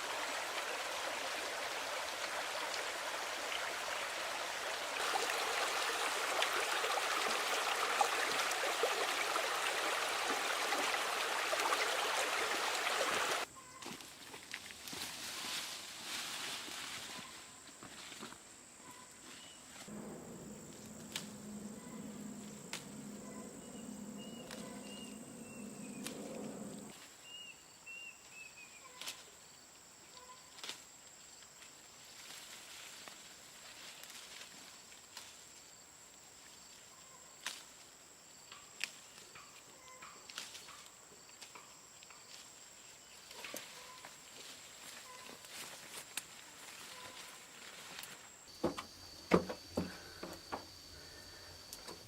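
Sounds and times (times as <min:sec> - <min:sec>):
low steady hum: 0:19.9 - 0:26.9
high insect drone: 0:19.9 - 0:27.0, 0:48.0 - 0:52.0
bird chirps: 0:21.4 - 0:29.0.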